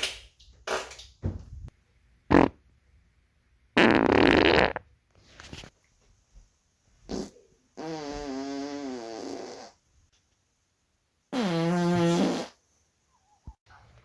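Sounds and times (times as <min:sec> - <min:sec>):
man farting: 0:02.3 - 0:02.6, 0:03.8 - 0:04.8, 0:07.1 - 0:09.7, 0:11.3 - 0:12.6.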